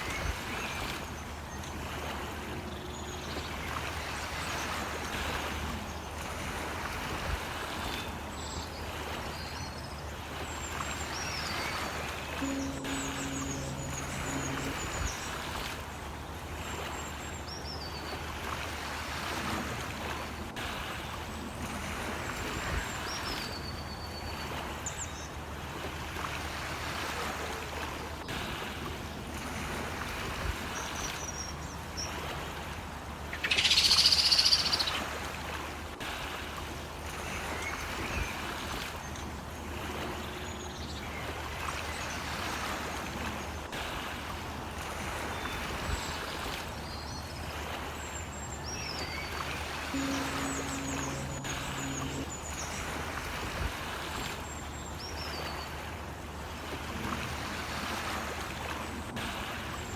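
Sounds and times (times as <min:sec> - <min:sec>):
low hum: 0:12.3 - 0:16.2, 0:49.9 - 0:53.7
high bird chirps: 0:33.4 - 0:34.9.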